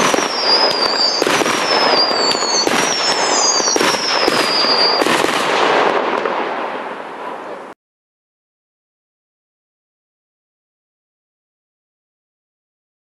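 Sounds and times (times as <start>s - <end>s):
high falling whistles: 0.0s - 5.3s
fireworks bangs and crackling: 0.0s - 7.8s.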